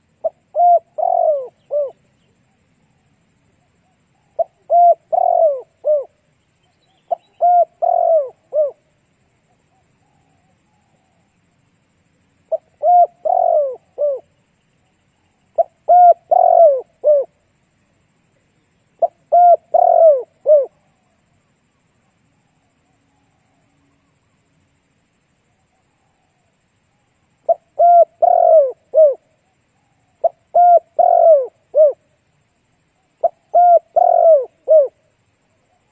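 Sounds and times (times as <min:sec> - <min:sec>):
dove cooing: 0:00.0 - 0:02.2, 0:03.6 - 0:06.2, 0:07.0 - 0:08.9, 0:12.5 - 0:14.4, 0:15.6 - 0:17.4, 0:19.0 - 0:21.0, 0:27.4 - 0:32.0, 0:33.2 - 0:35.0.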